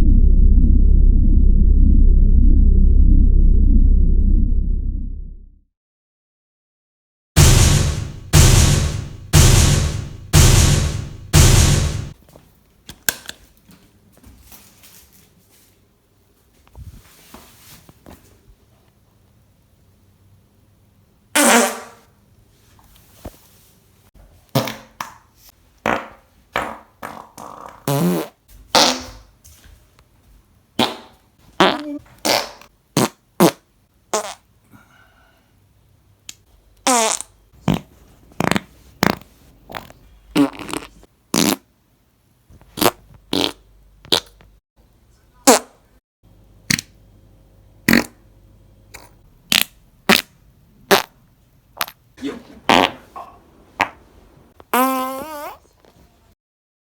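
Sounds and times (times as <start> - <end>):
farts: 21.4 - 22.0, 27.0 - 29.2, 30.8 - 34.5, 36.8 - 41.7, 42.7 - 44.4, 47.9 - 48.2, 50.9 - 51.1, 52.7 - 53.1, 54.7 - 55.7.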